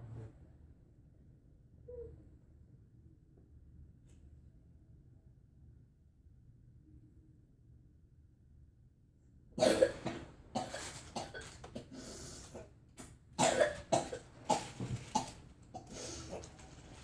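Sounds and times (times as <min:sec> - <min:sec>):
person coughing in fits: 0:09.6 - 0:12.1, 0:13.4 - 0:16.5.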